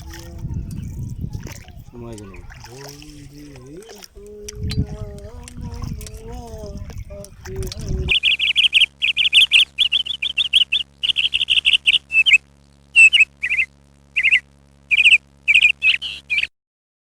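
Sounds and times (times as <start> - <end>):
bird chirping: 8.0 - 12.4, 13.0 - 16.5.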